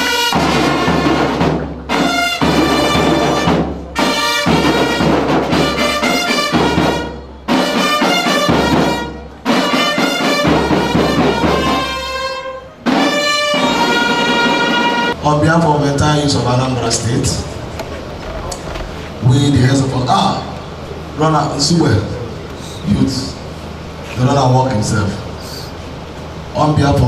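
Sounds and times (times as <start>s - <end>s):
brass-led music with drums: 0.0s - 15.2s.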